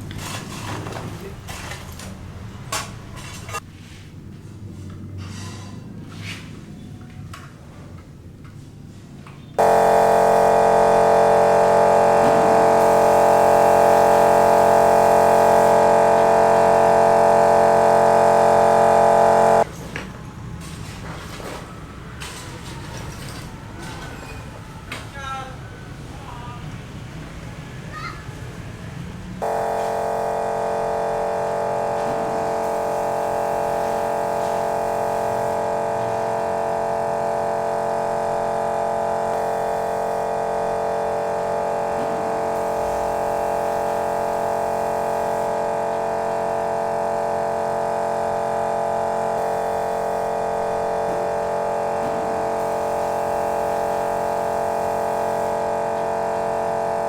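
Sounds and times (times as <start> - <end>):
sustained droning chord: 9.6 - 19.6, 29.4 - 34.8.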